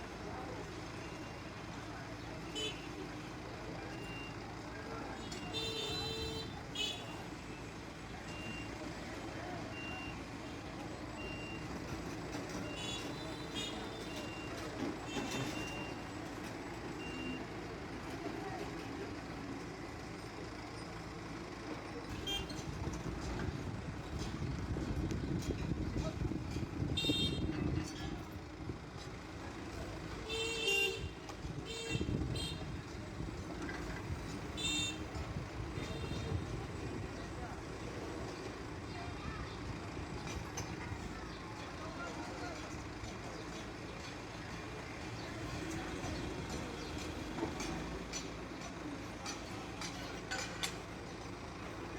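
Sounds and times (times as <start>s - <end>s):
diesel engine running: 0.0s - 51.9s
reversing alarm beeps: 11.2s - 11.8s.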